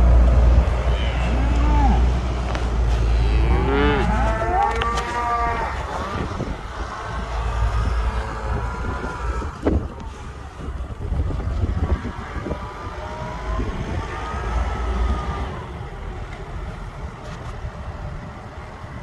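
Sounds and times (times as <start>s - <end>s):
low rumble: 0.0s - 18.8s
cow mooing: 0.4s - 6.4s.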